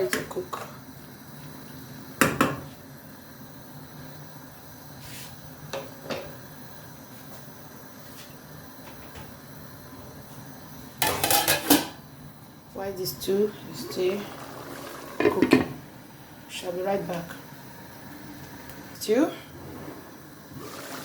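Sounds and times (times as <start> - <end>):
steady low hum: 0.0 - 21.0
pot lid clanking onto pot: 11.0 - 12.0
pots and utensils clattering: 11.0 - 12.0.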